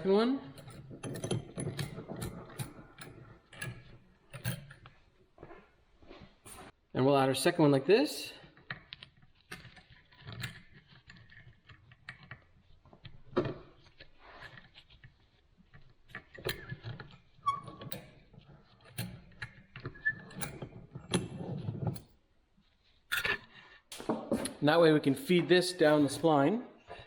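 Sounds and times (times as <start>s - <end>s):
small metal parts clicking and rattling: 0.0s - 5.5s, 8.4s - 22.1s, 23.1s - 23.5s.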